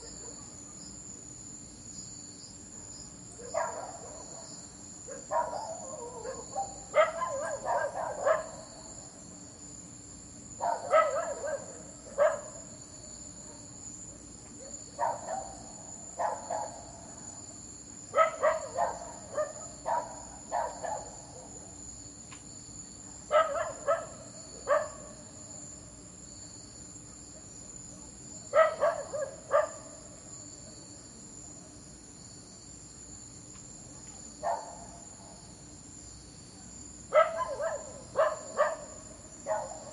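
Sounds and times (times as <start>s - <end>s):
crickets chirring: 0.0s - 39.9s
dog barking: 3.4s - 4.5s, 5.1s - 8.6s, 10.6s - 12.6s, 14.6s - 15.6s, 16.2s - 16.9s, 18.1s - 21.6s, 23.3s - 25.2s, 28.5s - 30.0s, 34.4s - 35.0s, 37.1s - 39.9s.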